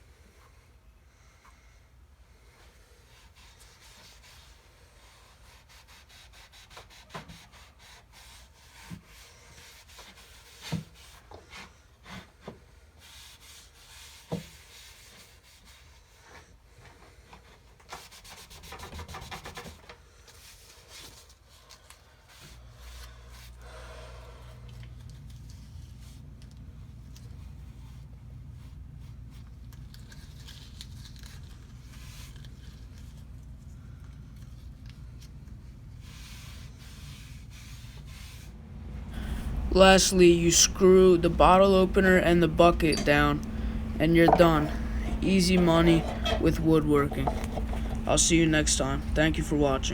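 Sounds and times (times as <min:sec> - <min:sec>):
rubbing on a wooden board: 0:03.1 - 0:16.4, 0:17.4 - 0:21.2, 0:44.3 - 0:48.1
low steady hum: 0:37.5 - 0:49.9.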